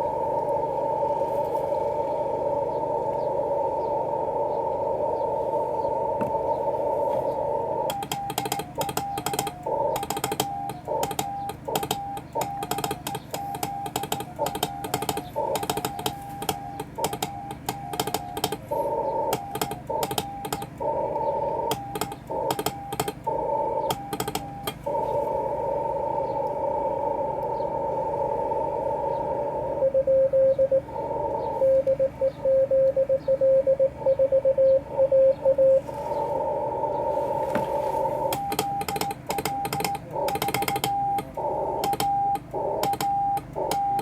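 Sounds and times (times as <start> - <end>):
receiver hiss: 0.0 - 44.0
morse code tone: 7.5 - 27.2, 29.6 - 35.8, 36.6 - 44.0
keying clicks: 7.8 - 25.0, 38.1 - 44.0.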